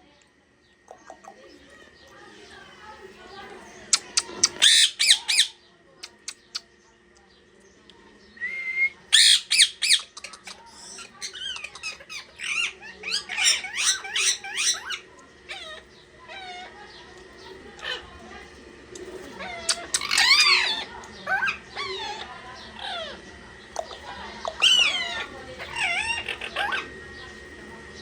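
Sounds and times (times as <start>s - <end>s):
parrots squawking: 3.8s - 6.6s, 9.1s - 27.3s.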